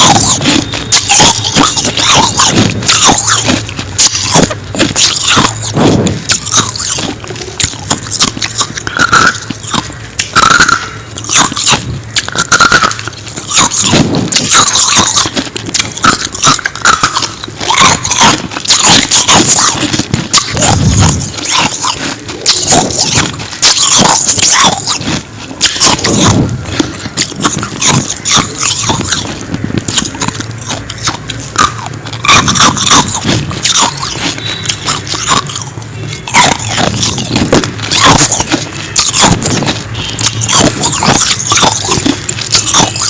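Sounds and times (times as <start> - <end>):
ice being chewed crunching: 0.0 - 43.0.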